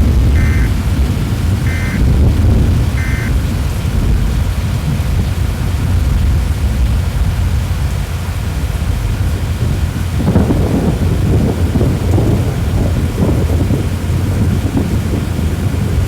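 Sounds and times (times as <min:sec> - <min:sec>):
heavy rain: 0:00.0 - 0:16.0
thunder rumble: 0:00.0 - 0:16.0
high electronic beeps: 0:00.4 - 0:00.7, 0:01.7 - 0:02.0, 0:03.0 - 0:03.3.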